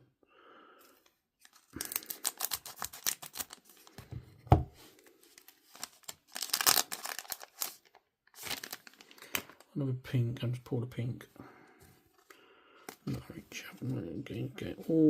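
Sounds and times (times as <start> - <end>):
foil wrapper tearing and crinkling: 1.4 - 4.0, 5.3 - 9.7.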